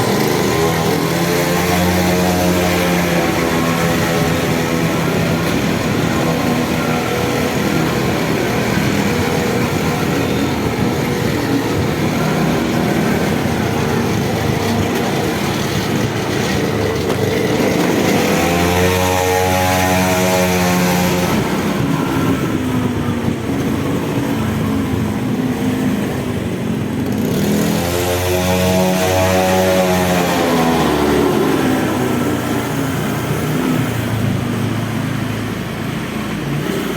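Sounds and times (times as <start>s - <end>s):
small engine running: 0.0s - 25.1s.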